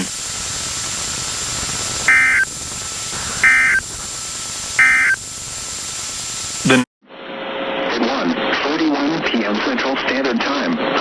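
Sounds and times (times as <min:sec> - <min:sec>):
radio hiss: 0:00.0 - 0:06.9
buzzy two-tone data bursts: 0:02.1 - 0:02.6, 0:03.3 - 0:03.9, 0:04.8 - 0:05.3.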